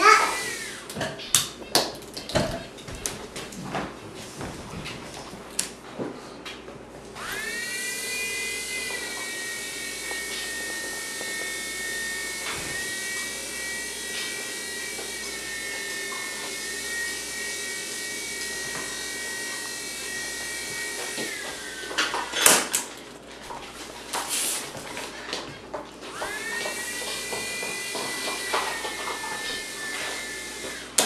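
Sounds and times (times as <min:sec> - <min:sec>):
electric motor high whine: 0:00.0 - 0:01.0, 0:07.2 - 0:22.4, 0:26.1 - 0:31.0.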